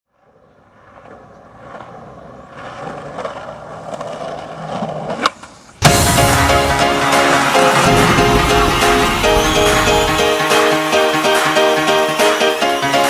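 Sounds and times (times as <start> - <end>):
skateboard wheels rolling on pavement: 0.1 - 13.0
skateboard clack: 0.2 - 13.0
electronic music with steady beat: 5.8 - 11.0.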